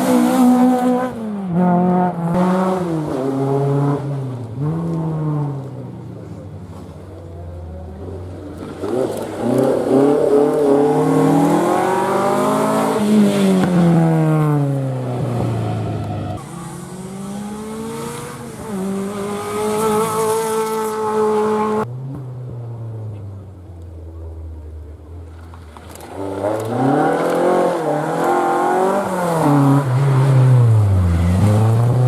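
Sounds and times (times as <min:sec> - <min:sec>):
rally car revving hard: 0:00.0 - 0:05.7, 0:08.6 - 0:21.9, 0:26.1 - 0:32.0
rally car passing at high revs: 0:00.0 - 0:06.4, 0:07.7 - 0:23.2, 0:25.8 - 0:32.0.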